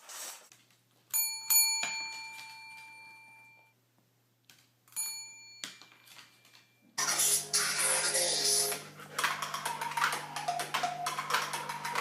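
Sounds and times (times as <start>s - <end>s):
small metal bell dinging: 1.1s - 3.7s, 4.9s - 6.0s.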